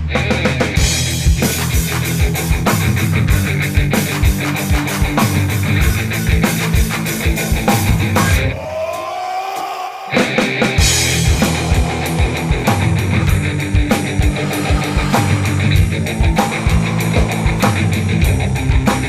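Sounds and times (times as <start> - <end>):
up-tempo music with drum beat: 0.0 - 8.5, 10.2 - 19.0
held tone sliding in pitch: 11.1 - 18.4.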